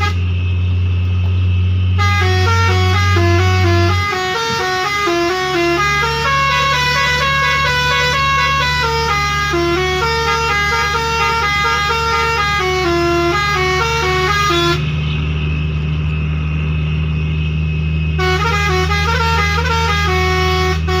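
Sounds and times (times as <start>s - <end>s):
musical air horn melody: 0.0s - 0.3s, 2.0s - 15.1s, 18.1s - 21.0s
low engine hum: 0.0s - 21.0s.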